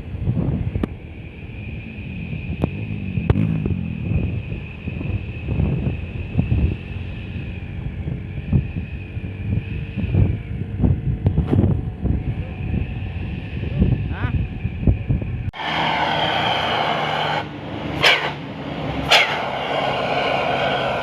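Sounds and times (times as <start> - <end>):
wind buffeting microphone: 0.0 - 15.6
road vehicle rumbling: 0.0 - 21.0.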